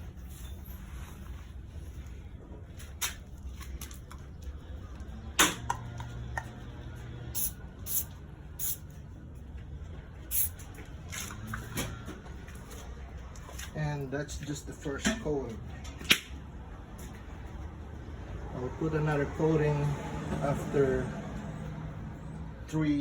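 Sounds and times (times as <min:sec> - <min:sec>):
aerosol can spraying: 0:07.4 - 0:08.8, 0:10.3 - 0:10.5.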